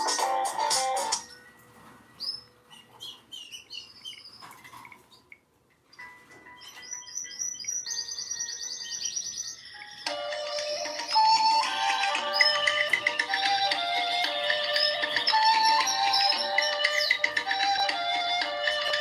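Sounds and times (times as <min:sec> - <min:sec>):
birdsong ringtone chirping: 0:00.0 - 0:19.0.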